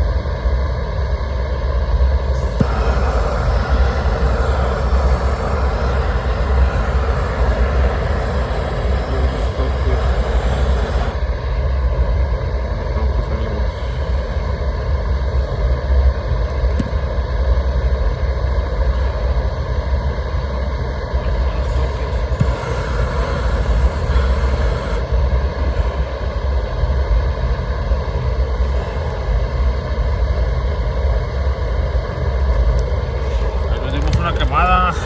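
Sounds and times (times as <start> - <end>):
roofing torch burning: 2.3 - 15.9, 21.0 - 26.7, 32.3 - 35.0.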